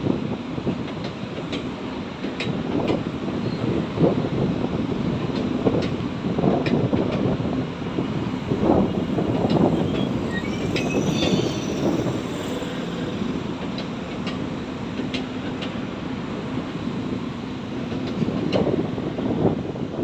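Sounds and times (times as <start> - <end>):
train wheels on rail: 0.0 - 20.0
faint wheel squeal: 8.7 - 13.7.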